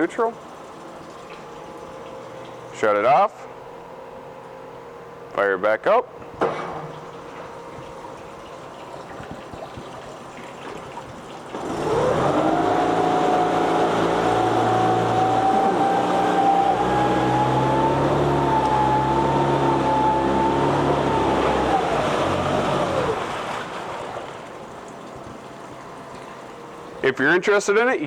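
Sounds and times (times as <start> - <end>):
outboard motor starting and idling: 6.4 - 27.4.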